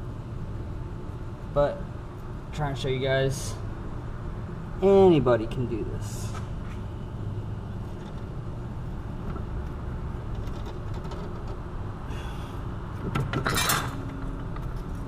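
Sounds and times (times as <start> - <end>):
low background hum: 0.0 - 15.0
metal parts clinking: 13.4 - 14.1.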